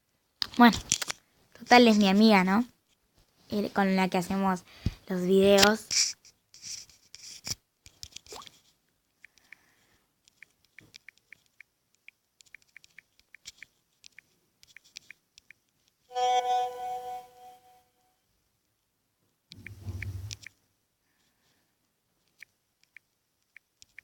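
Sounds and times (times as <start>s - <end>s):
typing on touchscreen keyboard: 10.3s - 15.6s, 22.3s - 24.0s
brief steady tone: 16.1s - 17.8s.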